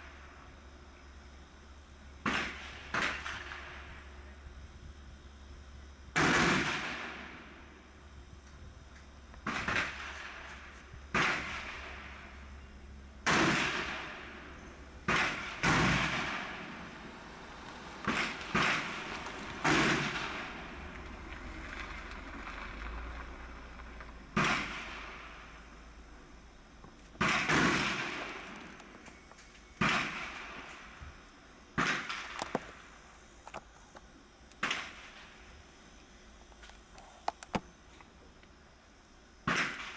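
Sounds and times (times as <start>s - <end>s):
gunshots: 6.2s - 7.2s, 13.2s - 14.3s, 15.0s - 17.4s, 24.4s - 25.4s, 27.2s - 28.9s, 29.8s - 30.9s
gunshots with long echo: 13.2s - 20.8s, 24.4s - 25.7s, 27.2s - 29.0s.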